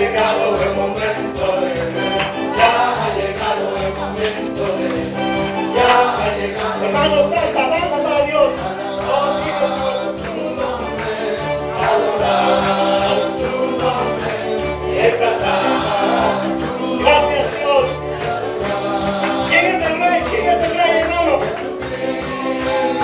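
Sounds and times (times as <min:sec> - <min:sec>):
group singing gospel: 0:00.0 - 0:23.0.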